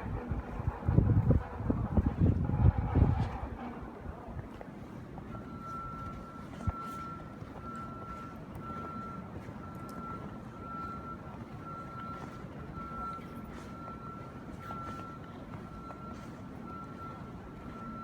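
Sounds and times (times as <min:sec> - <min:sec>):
low engine and street rumble: 0:00.0 - 0:18.0
backup alarm beeping: 0:05.3 - 0:18.0.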